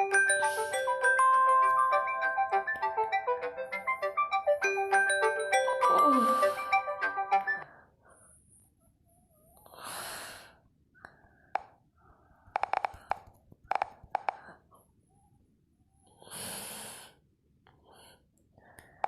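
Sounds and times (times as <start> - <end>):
small sharp clicks and taps: 12.5 - 14.5.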